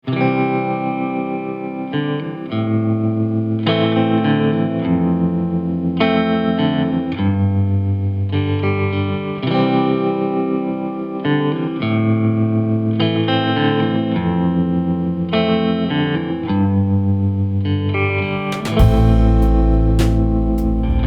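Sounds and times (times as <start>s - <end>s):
guitar playing sustained chords: 0.0s - 21.0s
held bass line: 18.2s - 21.0s.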